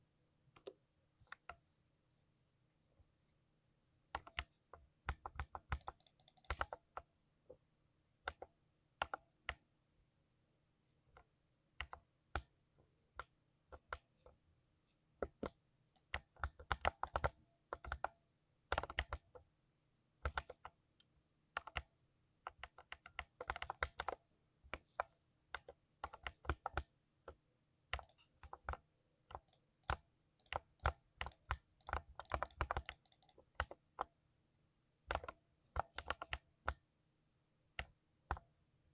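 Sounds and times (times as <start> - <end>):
computer keyboard typing: 4.1 - 7.0, 15.2 - 18.1, 18.7 - 19.3, 20.2 - 20.7, 21.6 - 21.9, 22.5 - 24.9, 25.5 - 26.9, 27.9 - 34.0, 35.1 - 36.8.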